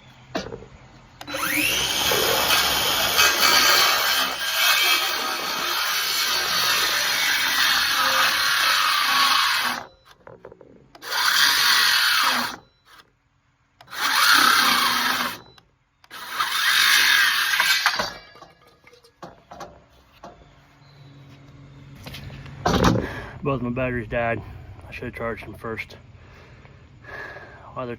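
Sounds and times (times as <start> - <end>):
circular saw cutting wood: 1.2 - 9.9, 11.0 - 12.6, 13.8 - 15.5, 16.1 - 19.0.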